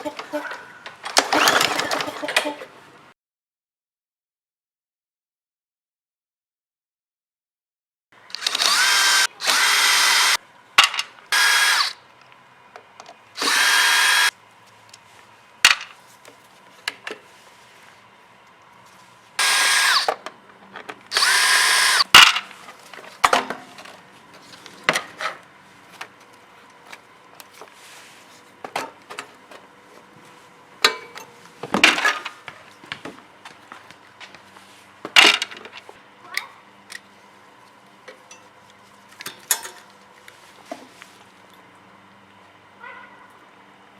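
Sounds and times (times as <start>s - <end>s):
power drill whining: 8.3s - 10.4s, 11.3s - 12.0s, 13.4s - 14.3s, 19.4s - 20.2s, 21.1s - 22.1s
tools and metal parts clinking: 39.2s - 39.9s.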